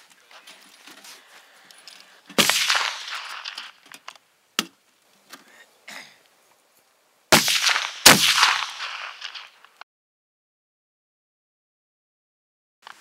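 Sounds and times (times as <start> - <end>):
rifle shots with echo: 2.4 - 3.8, 7.3 - 9.7.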